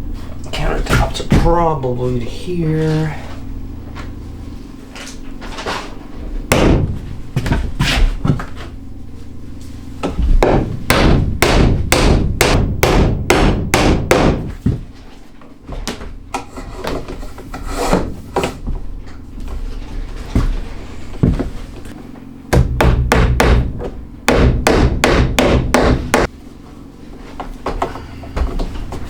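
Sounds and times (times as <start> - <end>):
hammer striking wood: 6.5 - 7.6, 10.0 - 14.7, 22.5 - 26.3.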